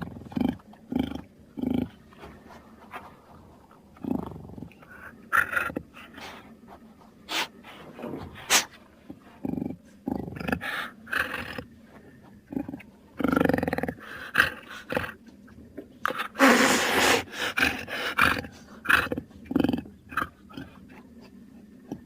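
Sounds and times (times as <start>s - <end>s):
animal growls and snarls: 0.0s - 2.0s, 3.9s - 6.5s, 7.2s - 11.7s, 12.4s - 15.2s, 16.0s - 21.0s.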